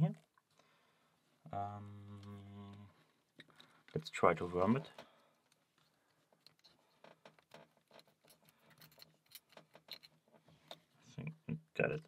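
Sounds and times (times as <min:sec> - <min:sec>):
lock pick clicks and scratches: 0:05.5 - 0:10.8.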